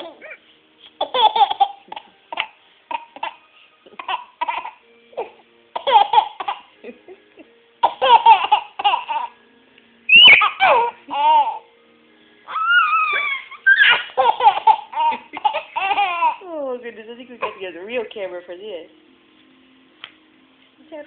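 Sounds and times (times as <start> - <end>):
baby laughing: 0.0 - 9.4, 10.1 - 11.7, 12.5 - 16.4.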